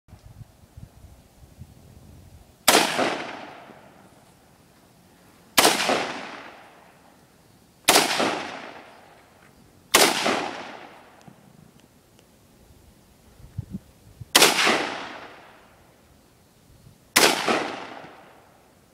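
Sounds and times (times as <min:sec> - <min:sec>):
rifle shots with echo: 0:02.7 - 0:04.0, 0:05.6 - 0:06.8, 0:07.9 - 0:09.0, 0:09.9 - 0:11.2, 0:14.4 - 0:15.6, 0:17.2 - 0:18.5.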